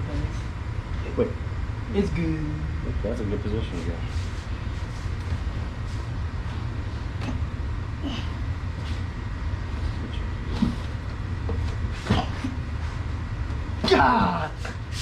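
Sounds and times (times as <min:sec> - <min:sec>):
air conditioner rumbling: 0:00.0 - 0:15.0.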